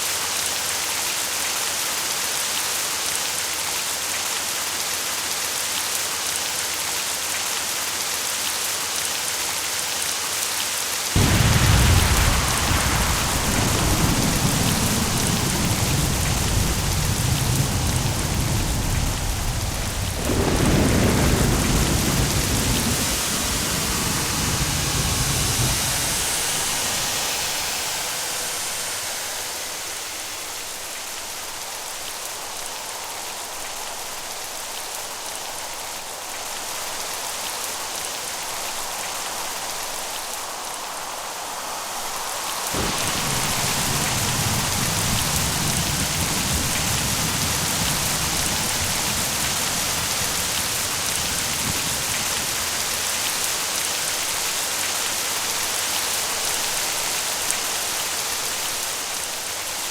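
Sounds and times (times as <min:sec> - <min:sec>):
steady rain: 0:00.0 - 0:59.9
thunder clap and rumble: 0:11.2 - 0:30.0, 0:42.8 - 0:54.4.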